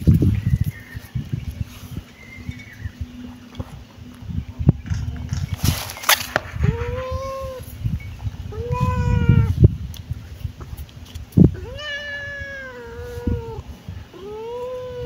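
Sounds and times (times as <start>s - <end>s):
low rumbling noise: 0.0s - 15.0s
kitten meowing: 8.5s - 9.5s, 11.6s - 13.6s, 14.2s - 15.0s.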